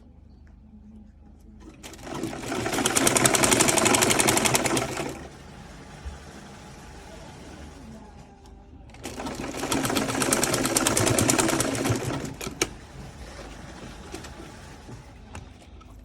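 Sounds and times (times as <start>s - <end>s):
sewing machine stitching: 1.6s - 7.8s, 8.9s - 15.2s.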